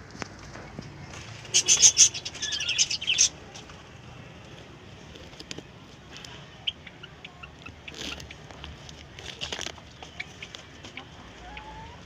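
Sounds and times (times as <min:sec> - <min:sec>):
chickens squawking: 0:01.4 - 0:03.4, 0:06.4 - 0:08.5, 0:09.3 - 0:12.0
high-pitched chick peeps: 0:06.4 - 0:08.5, 0:09.4 - 0:12.0.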